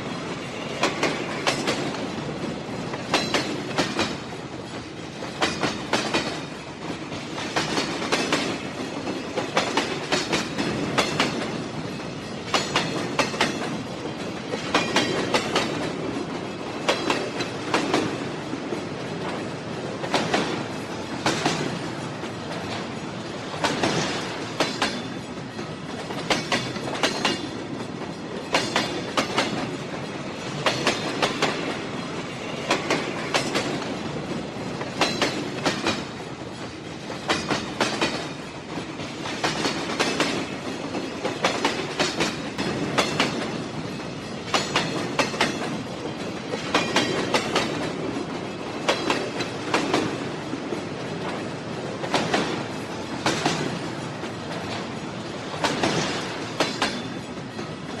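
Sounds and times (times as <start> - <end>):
train rumble: 0.0 - 58.0
train wheels clattering over rail joints: 0.0 - 58.0.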